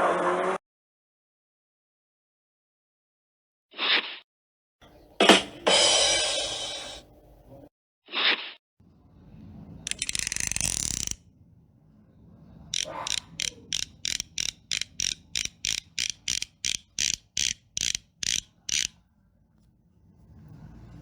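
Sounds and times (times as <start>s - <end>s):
mechanical ratchet clicking: 9.9s - 11.2s, 12.8s - 19.0s.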